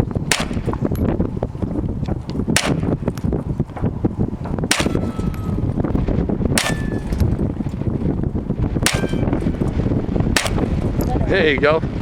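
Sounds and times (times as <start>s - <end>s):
wind noise on microphone: 0.0s - 12.0s
gunshots: 0.3s - 0.7s, 2.6s - 3.0s, 4.7s - 5.3s, 6.6s - 7.2s, 8.8s - 9.3s, 10.4s - 10.8s
thin metallic ring: 5.0s - 5.8s.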